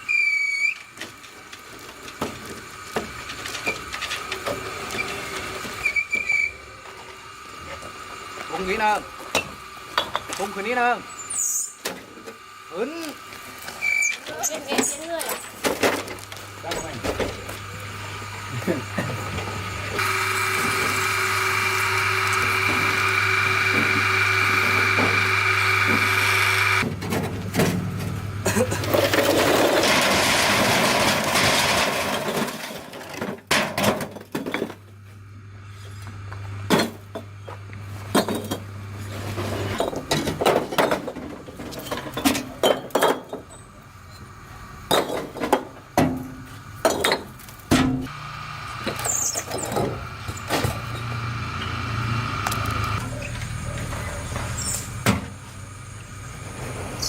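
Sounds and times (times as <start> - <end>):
power tool motor whining: 16.3 - 26.8, 48.1 - 55.0.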